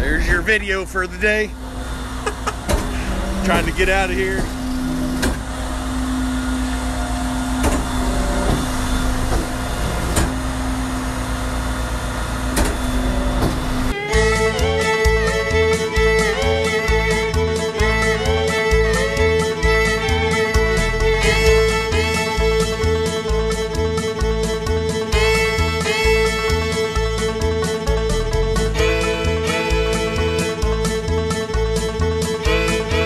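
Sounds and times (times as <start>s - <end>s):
truck engine rumble: 0.0s - 33.0s
country music with fiddle and guitar: 2.9s - 4.7s, 13.9s - 33.0s.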